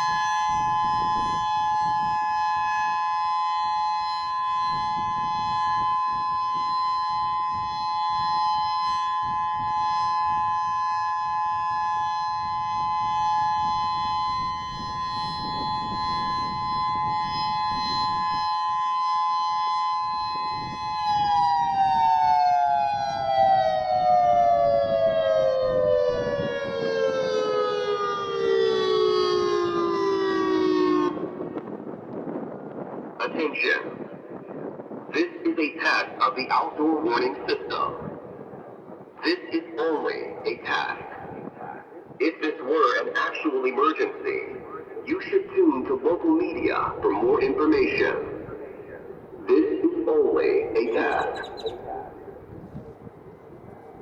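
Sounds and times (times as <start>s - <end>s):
two-note electronic warning siren: 0.0s - 31.8s, 44.6s - 54.0s.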